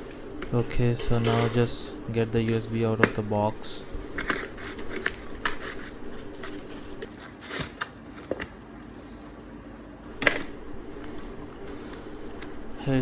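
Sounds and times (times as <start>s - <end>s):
cardboard and plastic packaging handled: 1.2s - 8.5s.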